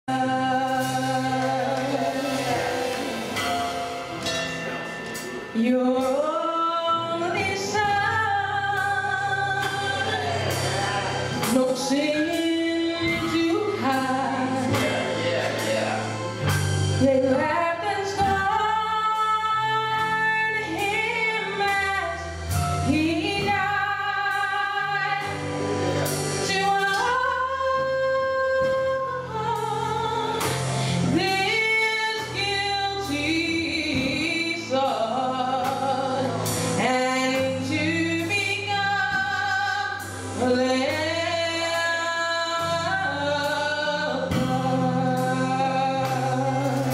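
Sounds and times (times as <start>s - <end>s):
bass line: 0.0s - 46.9s
woman singing lead: 0.1s - 3.9s, 5.6s - 15.2s, 16.9s - 46.9s
gospel choir singing: 0.1s - 4.0s, 8.1s - 17.8s
drum hits: 0.7s - 5.4s.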